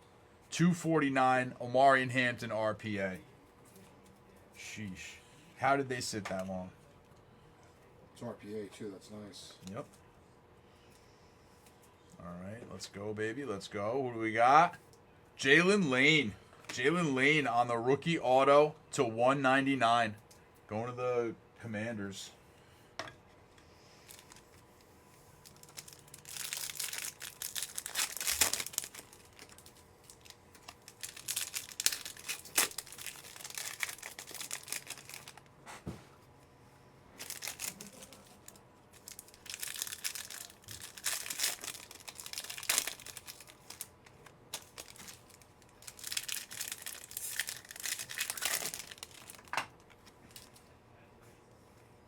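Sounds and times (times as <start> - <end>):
plastic wrappers tearing and crinkling: 24.1 - 24.6, 25.4 - 35.5, 37.2 - 50.6.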